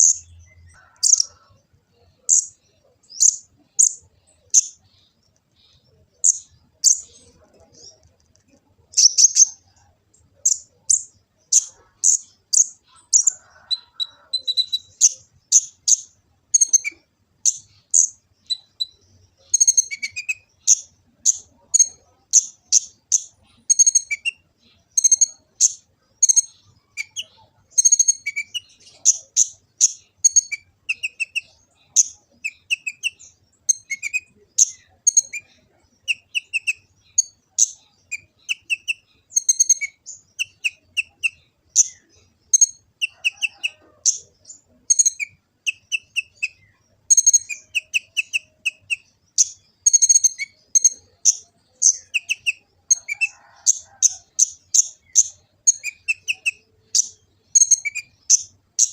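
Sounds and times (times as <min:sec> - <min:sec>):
sunbird chirping and twittering: 0:00.0 - 0:58.9.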